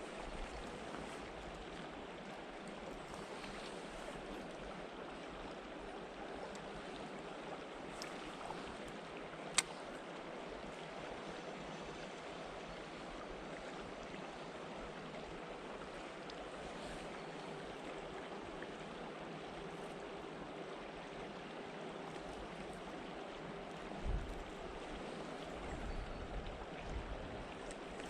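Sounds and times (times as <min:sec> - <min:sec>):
flowing water rushing: 0:00.0 - 0:28.0
sharp click: 0:09.5 - 0:09.8.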